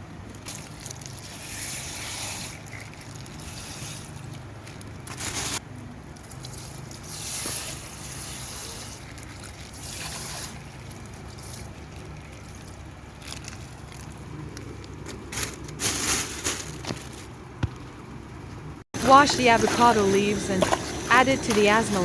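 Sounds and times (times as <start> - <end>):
water trickling and sloshing: 0.4 - 17.4.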